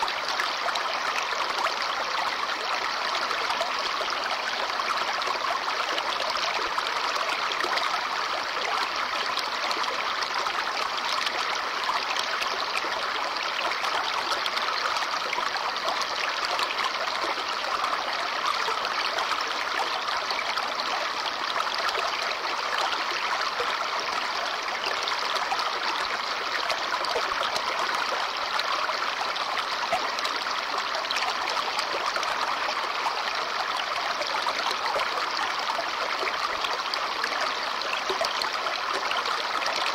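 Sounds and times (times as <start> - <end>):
brook babbling over stones: 0.0 - 39.9.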